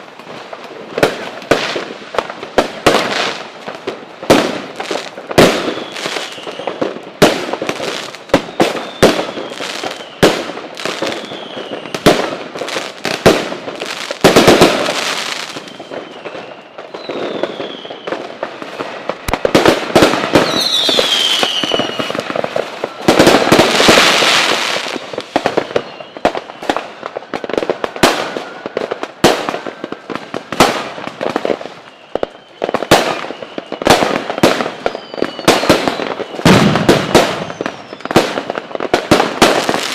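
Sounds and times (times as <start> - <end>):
falling firework whistle: 0.0 - 39.9
firecrackers banging: 0.0 - 39.9.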